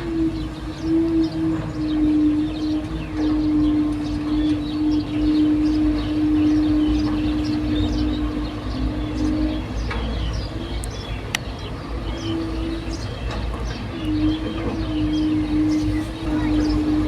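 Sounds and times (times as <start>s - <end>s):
birds chirping: 0.0s - 17.0s
heavy machinery engine rumbling: 0.0s - 17.0s.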